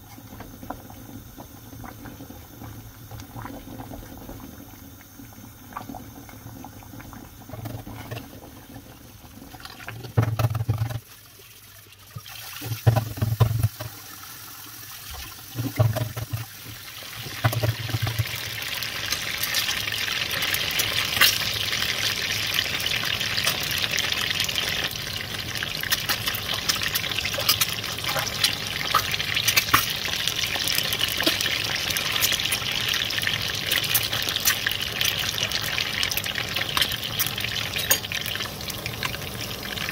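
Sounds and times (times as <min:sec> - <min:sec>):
food sizzling in a pan: 0:16.2 - 0:39.9.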